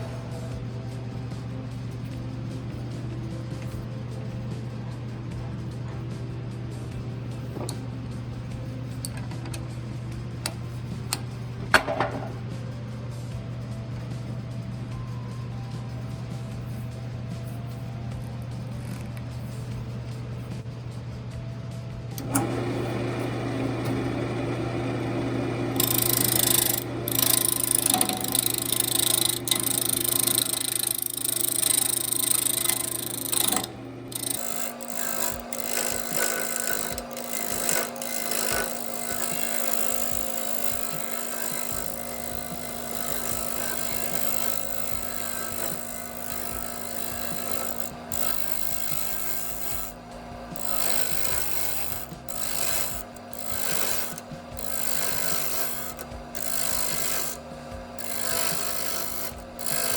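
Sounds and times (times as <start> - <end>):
background music with bass: 0.0 - 59.9
tool scraping spinning wood: 22.2 - 59.9
wood lathe running: 22.2 - 59.9.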